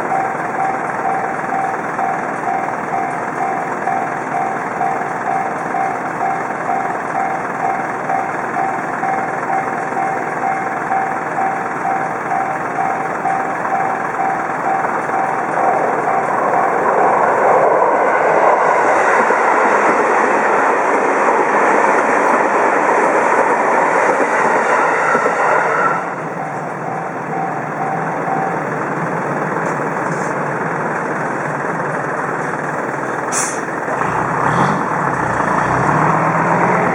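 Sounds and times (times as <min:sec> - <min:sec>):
level-crossing bell dinging: 0:00.0 - 0:16.8, 0:25.1 - 0:30.1
train passing: 0:00.0 - 0:36.9.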